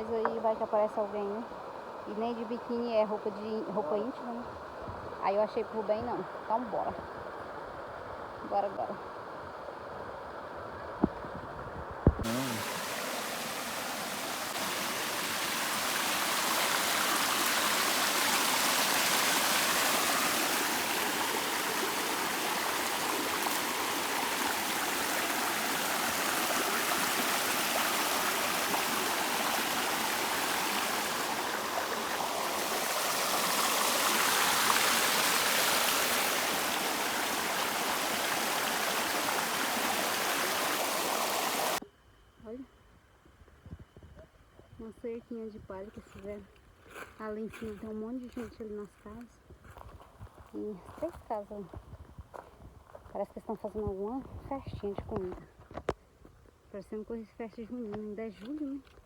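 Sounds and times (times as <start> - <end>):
stream water rushing: 12.2 - 41.8.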